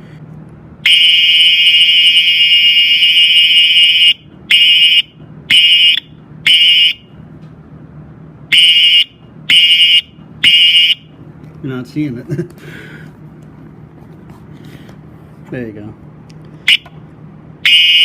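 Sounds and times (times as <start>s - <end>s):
buzzy fire alarm horn blasts: 0.8s - 7.2s, 8.5s - 11.1s, 16.7s - 16.9s, 17.6s - 18.0s.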